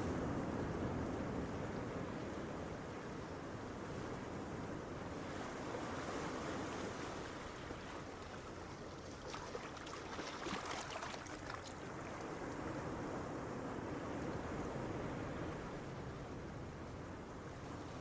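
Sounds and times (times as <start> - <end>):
ocean waves breaking: 5.9 - 13.8
surf fizzing: 7.6 - 12.7.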